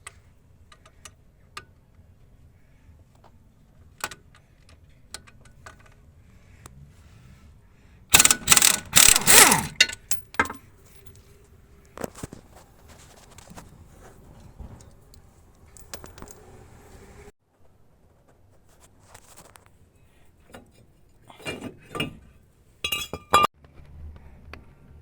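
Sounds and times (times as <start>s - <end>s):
metal clattering burst: 8.1s - 10.2s
metal tools clanking and rattling: 8.2s - 11.2s, 20.5s - 23.5s.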